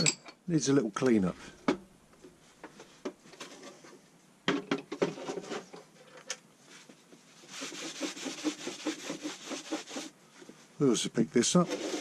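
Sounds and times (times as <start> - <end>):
tool cases rubbing and scraping: 2.7 - 4.1, 4.9 - 10.6, 11.4 - 12.0.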